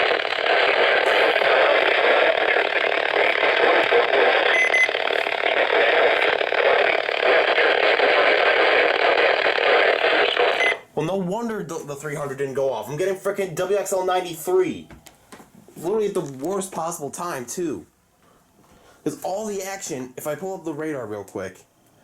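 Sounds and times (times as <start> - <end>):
radio static hiss: 0.0 - 10.9.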